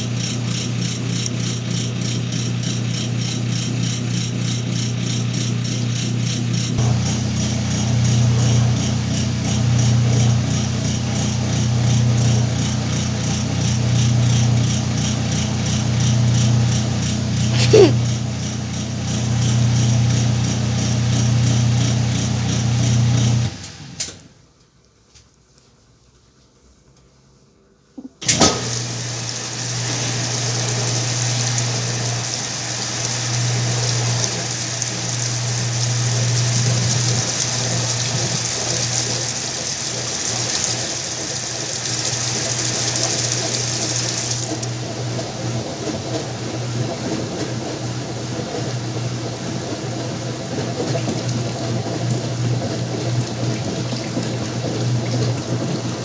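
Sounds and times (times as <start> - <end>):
low machine hum: 6.7 - 24.0
water rushing into tub: 17.1 - 23.0, 28.3 - 56.0.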